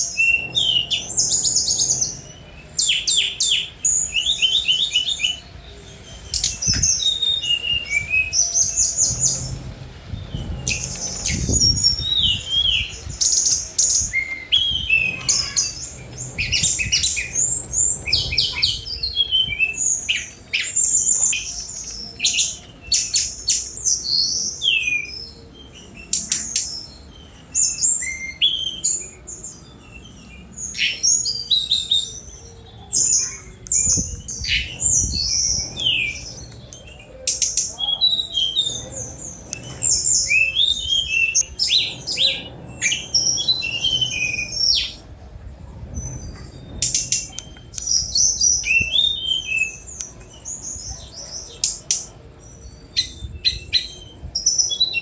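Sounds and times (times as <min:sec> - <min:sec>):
bird singing: 0:00.0 - 0:45.2, 0:45.9 - 0:55.0.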